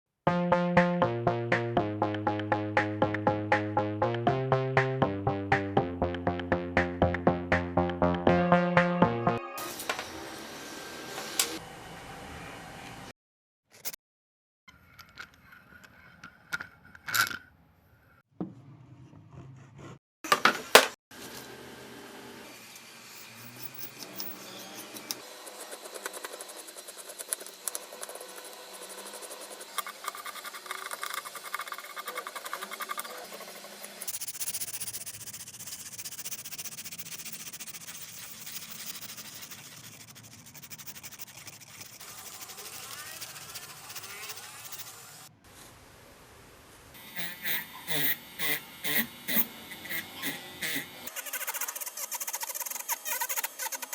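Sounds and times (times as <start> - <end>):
tool scraping wood: 23.2 - 45.0, 47.2 - 53.9.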